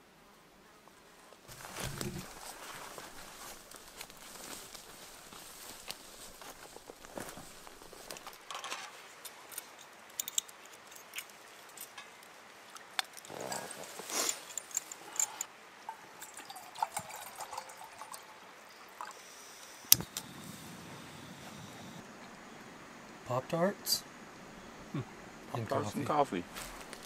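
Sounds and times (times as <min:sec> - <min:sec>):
gear rustling: 0:01.5 - 0:15.5.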